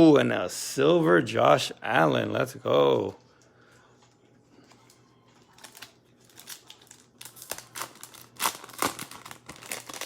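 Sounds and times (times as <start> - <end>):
plastic wrapper crinkling: 4.6 - 10.0.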